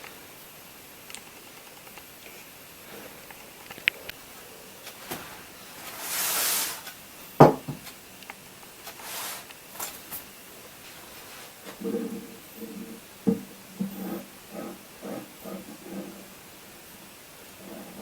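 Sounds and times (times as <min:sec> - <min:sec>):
rustling: 0:02.2 - 0:07.0, 0:08.7 - 0:13.1.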